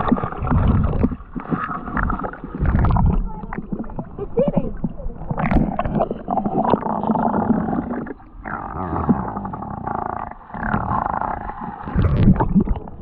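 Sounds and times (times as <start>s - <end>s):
muffled underwater rushing: 0.0s - 13.0s.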